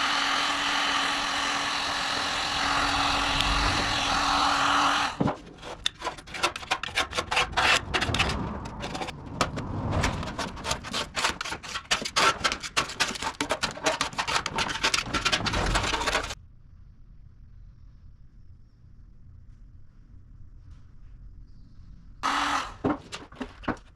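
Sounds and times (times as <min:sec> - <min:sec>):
scraping paint off sheet metal: 0:05.2 - 0:16.4.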